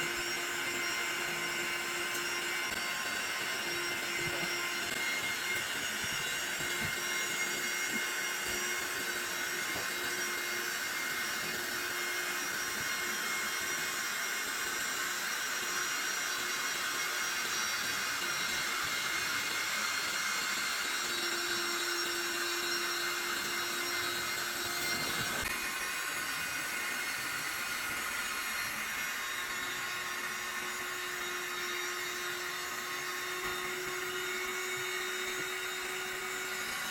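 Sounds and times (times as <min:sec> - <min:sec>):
electric air pump whirring: 0:00.0 - 0:36.9.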